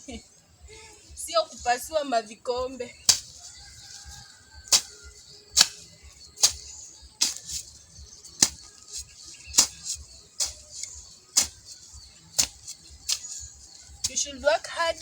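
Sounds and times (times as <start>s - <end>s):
faint music: 0.0s - 15.0s
hoe cutting into soil: 3.1s - 14.4s.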